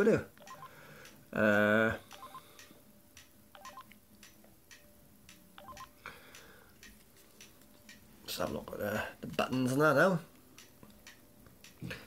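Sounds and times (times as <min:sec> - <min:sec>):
mobile phone key beeps: 0:00.4 - 0:00.7, 0:02.1 - 0:02.5, 0:03.6 - 0:03.9, 0:05.6 - 0:05.9.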